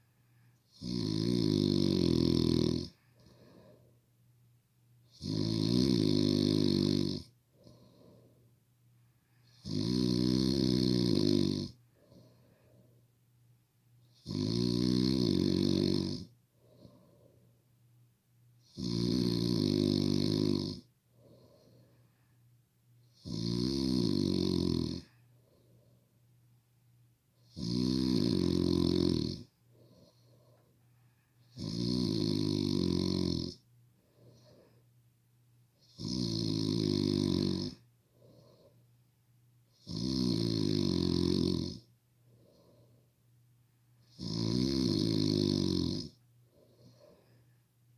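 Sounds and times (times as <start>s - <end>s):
faint breathing: 0.0s - 0.7s, 2.9s - 4.2s, 7.4s - 9.6s, 11.7s - 13.2s, 16.3s - 17.7s, 21.0s - 23.2s, 25.0s - 26.3s, 29.4s - 31.6s, 33.9s - 35.0s, 38.0s - 39.0s, 42.2s - 43.2s, 46.4s - 47.9s
person snoring: 0.7s - 3.7s, 5.1s - 8.2s, 9.4s - 12.4s, 14.2s - 17.2s, 18.6s - 21.9s, 23.1s - 25.2s, 27.5s - 30.6s, 31.5s - 33.6s, 35.8s - 38.7s, 39.8s - 41.9s, 44.1s - 47.4s.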